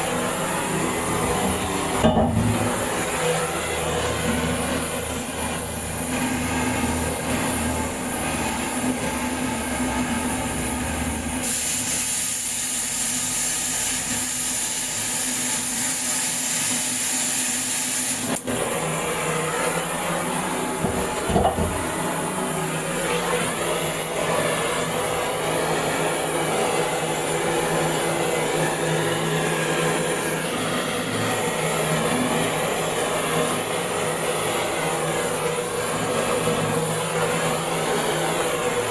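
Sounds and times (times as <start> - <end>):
mechanical noise with hiss: 0.0 - 38.9
loud knock: 2.0 - 2.8, 20.8 - 21.8.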